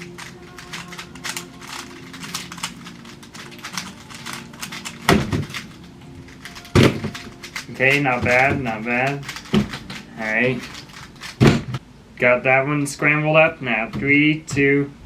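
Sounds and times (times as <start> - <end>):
speed cube clicking turns: 0.0 - 11.5
loud thud: 11.4 - 11.8.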